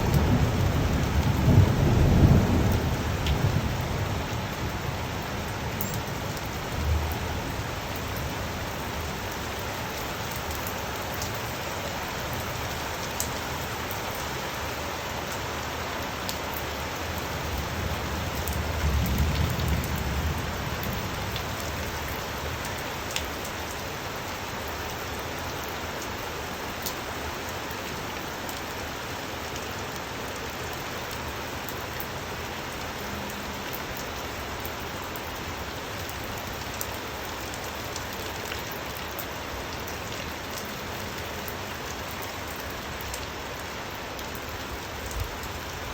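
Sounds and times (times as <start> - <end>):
rain drumming on surfaces: 0.0 - 45.9
drip ticks: 5.8 - 6.1.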